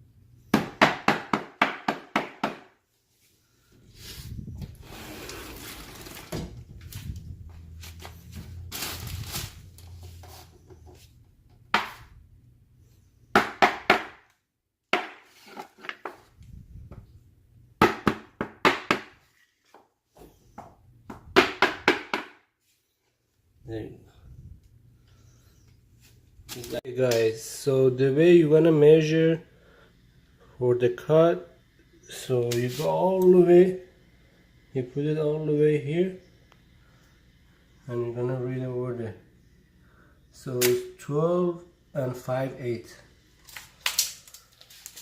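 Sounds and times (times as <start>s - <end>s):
rubber mallet knocking flooring planks: 0.5s - 2.7s, 13.4s - 14.2s, 14.9s - 15.3s, 17.8s - 19.2s, 20.6s - 22.4s
scraping and shuffling: 3.0s - 11.3s, 32.4s - 33.4s.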